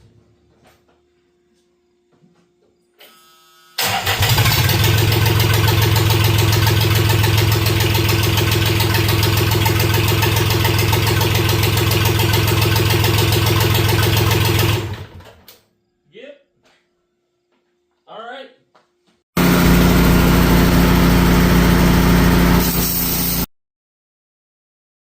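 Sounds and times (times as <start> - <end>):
diesel engine running: 3.8 - 15.2, 19.4 - 23.5.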